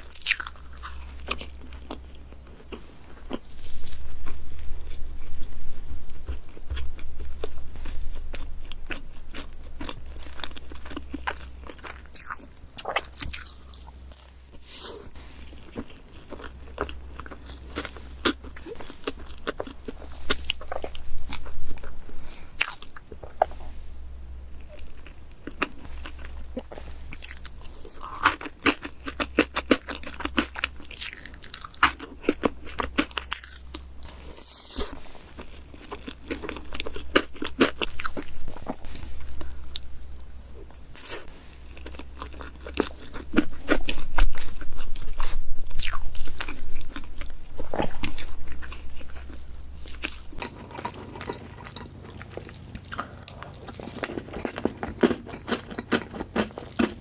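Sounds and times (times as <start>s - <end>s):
low steady hum: 0.0s - 57.0s
crackling mouth sounds: 24.5s - 57.0s
person eating cake: 24.6s - 57.0s.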